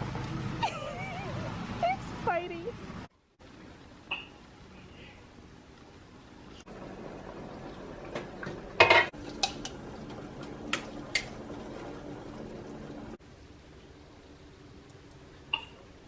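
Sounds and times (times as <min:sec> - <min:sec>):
steady low hum: 0:00.0 - 0:16.0
dishes and cutlery clattering: 0:08.8 - 0:09.8.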